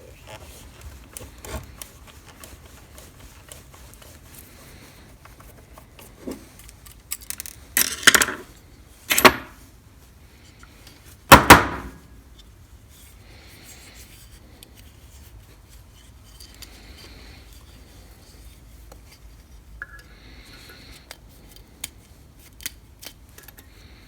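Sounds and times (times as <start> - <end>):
metal hardware clanking: 9.1 - 9.6.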